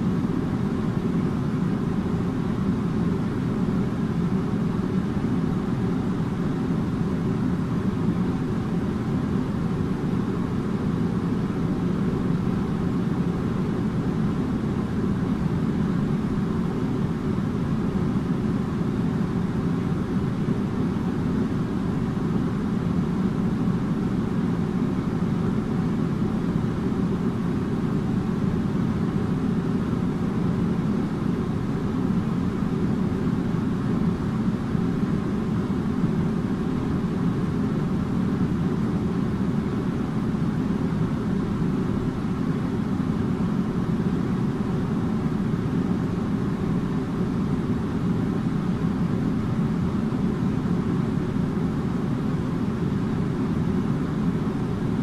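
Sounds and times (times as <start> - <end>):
air conditioner droning: 0.0 - 55.0.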